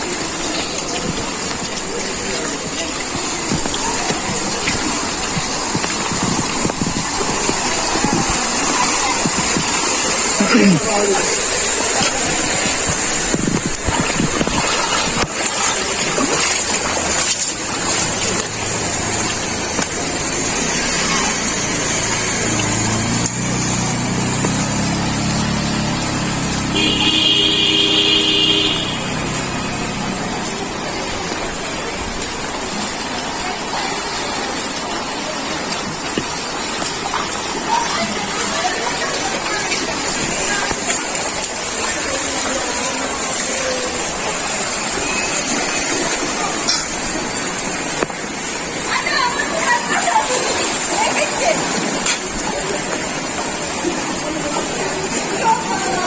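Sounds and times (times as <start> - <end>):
outdoor background noise: 0.0 - 56.0
vehicle engine rumble passing: 16.6 - 35.7
vehicle horn: 26.6 - 29.3.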